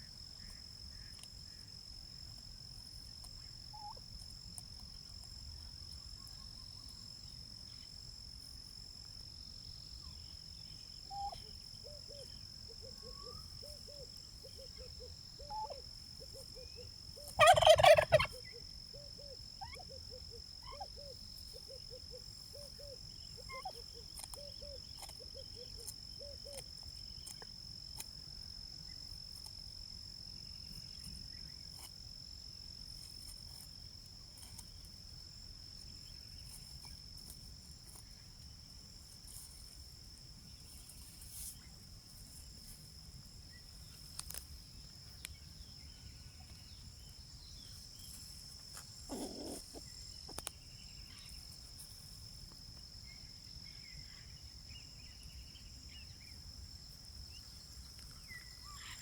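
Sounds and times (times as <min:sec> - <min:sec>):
crickets chirping: 0:00.0 - 0:59.0
turkey gobbling: 0:17.3 - 0:18.4.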